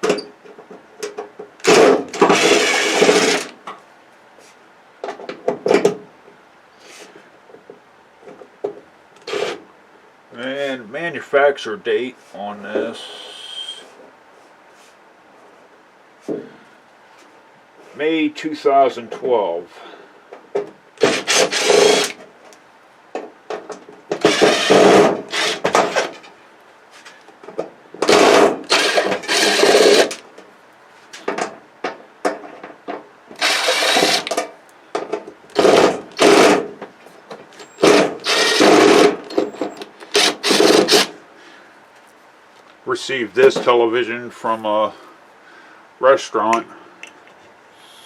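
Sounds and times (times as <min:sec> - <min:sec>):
power screwdriver running: 0:01.6 - 0:03.5, 0:21.0 - 0:22.2, 0:24.2 - 0:26.2, 0:28.0 - 0:30.2, 0:33.4 - 0:34.4, 0:35.5 - 0:36.6, 0:37.6 - 0:39.3, 0:40.1 - 0:41.1.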